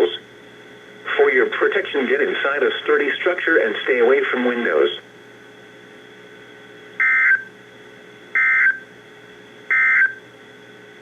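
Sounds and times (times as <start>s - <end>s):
radio hiss: 1.0s - 5.1s.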